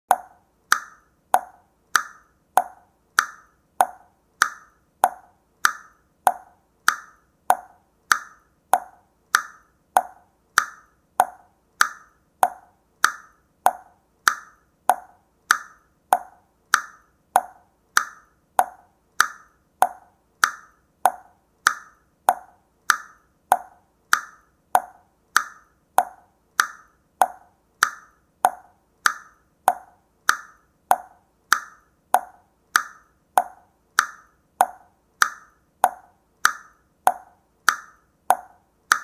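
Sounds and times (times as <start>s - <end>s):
mechanical clock ticking: 0.1s - 39.0s.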